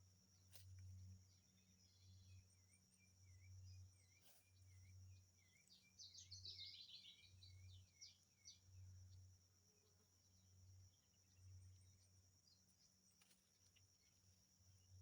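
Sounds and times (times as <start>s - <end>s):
bird chirping: 4.7s - 8.6s.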